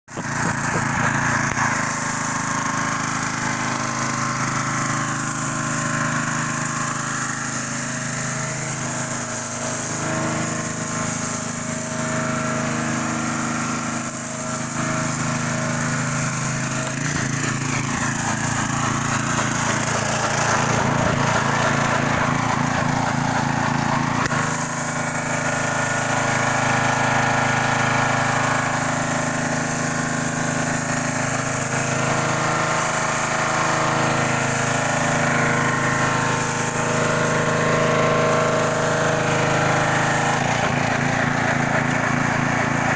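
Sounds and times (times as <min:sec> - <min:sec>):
pressure washer motor drone: 0:00.1 - 0:42.9
spray jet hissing: 0:00.2 - 0:03.8, 0:05.0 - 0:05.7, 0:07.0 - 0:12.1, 0:28.3 - 0:42.9.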